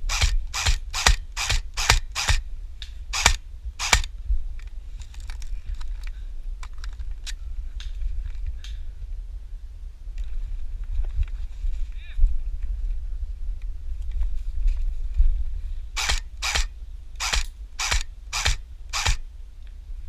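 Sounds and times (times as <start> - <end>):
airsoft gun shots: 0.0 - 2.4, 3.1 - 4.1, 16.0 - 19.2.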